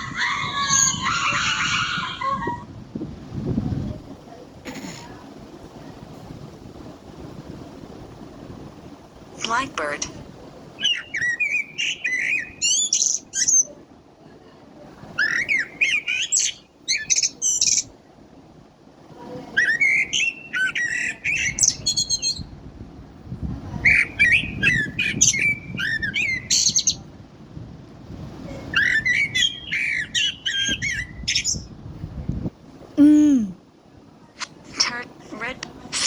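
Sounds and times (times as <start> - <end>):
blackbird singing: 10.8 - 13.7, 15.2 - 17.9, 19.6 - 22.5, 23.9 - 27.0, 28.8 - 31.6.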